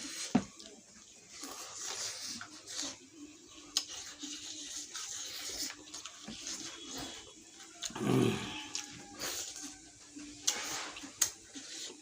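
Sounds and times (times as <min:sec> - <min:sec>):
chewing and slurping: 0:01.3 - 0:12.0.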